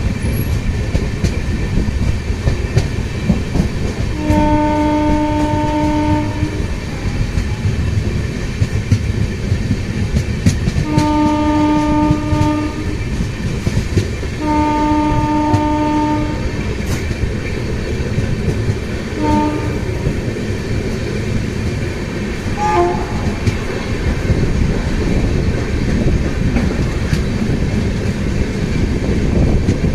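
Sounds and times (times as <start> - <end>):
train wheels rumbling on rails: 0.0 - 29.9
locomotive horn: 4.1 - 6.7, 10.8 - 13.0, 14.4 - 16.6, 19.2 - 20.1, 22.6 - 24.0.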